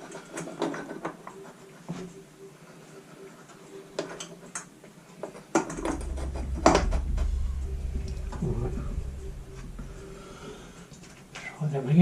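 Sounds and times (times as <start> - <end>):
steady low hum: 5.6 - 12.0.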